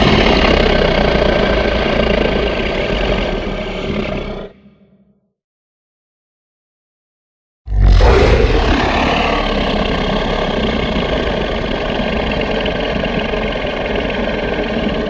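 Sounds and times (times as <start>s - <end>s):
deep rumbling: 7.7s - 15.0s.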